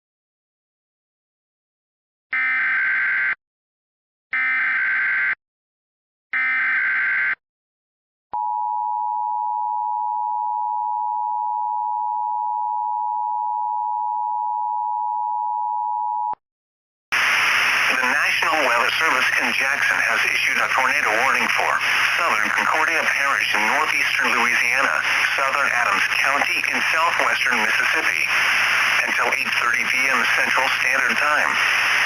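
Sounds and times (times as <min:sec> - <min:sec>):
noisy broadcast: 0:17.1 - 0:32.0
digital header data bursts: 0:17.7 - 0:32.0.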